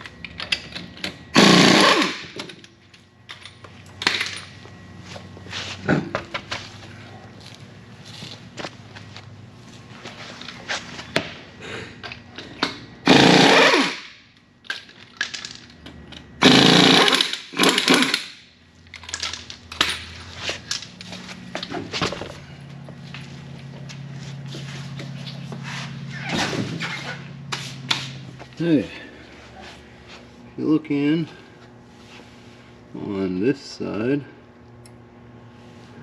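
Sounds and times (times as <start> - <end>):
impact wrench bursts: 1.3 - 2.6, 13.0 - 14.2, 16.4 - 18.4
metal parts clicking and clattering: 14.6 - 16.3, 17.1 - 21.1.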